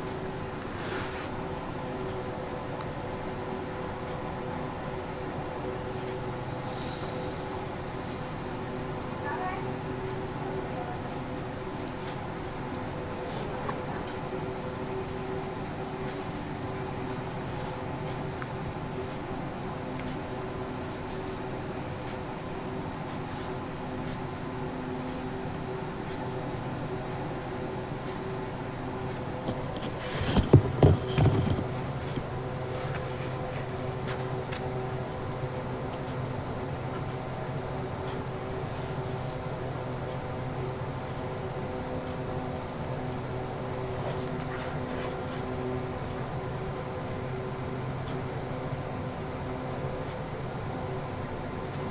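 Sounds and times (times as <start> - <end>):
cricket chirping: 0.0 - 51.9
clatter of knocks: 29.4 - 32.4.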